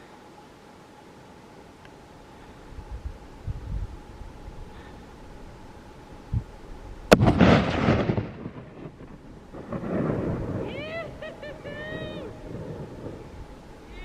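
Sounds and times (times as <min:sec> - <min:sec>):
rifle shot with echo: 0:07.1 - 0:08.9.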